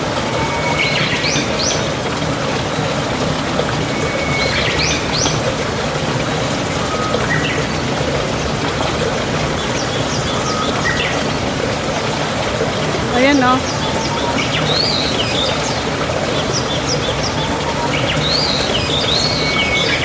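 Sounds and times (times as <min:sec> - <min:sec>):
bird calling: 0:00.0 - 0:20.0.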